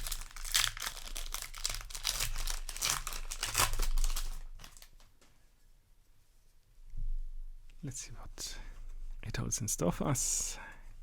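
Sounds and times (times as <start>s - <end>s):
foil wrapper tearing and crinkling: 0.0s - 5.0s.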